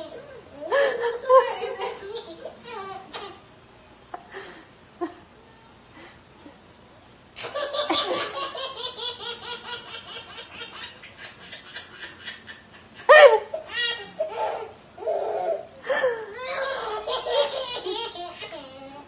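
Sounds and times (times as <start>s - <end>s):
baby laughing: 0.0s - 3.4s, 7.4s - 15.7s, 16.4s - 19.0s.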